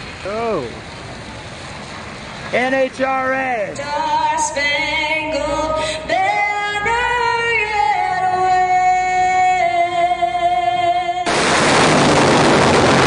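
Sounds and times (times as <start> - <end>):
person singing unaccompanied: 3.0 - 11.3.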